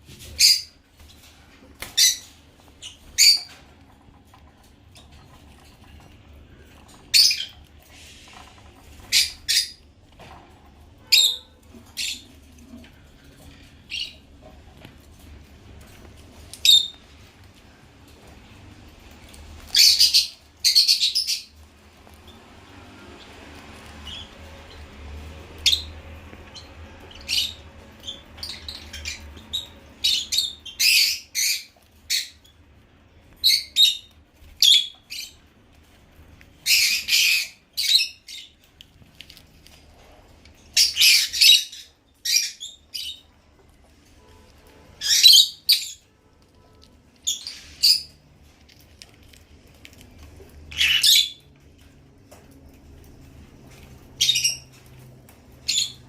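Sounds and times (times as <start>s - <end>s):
lovebirds squawking and chirping: 0.2s - 0.8s, 1.8s - 3.8s, 6.7s - 9.9s, 11.1s - 12.6s, 13.5s - 14.6s, 16.5s - 17.3s, 19.2s - 25.0s, 25.6s - 32.6s, 33.4s - 35.4s, 36.5s - 38.7s, 40.5s - 43.4s, 44.8s - 46.1s, 47.2s - 48.6s, 50.6s - 51.5s, 54.1s - 56.0s.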